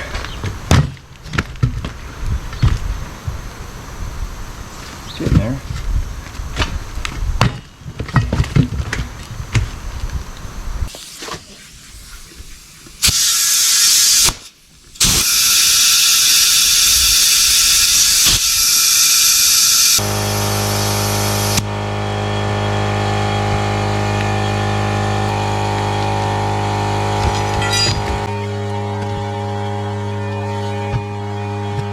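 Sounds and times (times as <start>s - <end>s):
compressed air hissing: 10.9s - 21.7s
steady low hum: 16.0s - 31.9s.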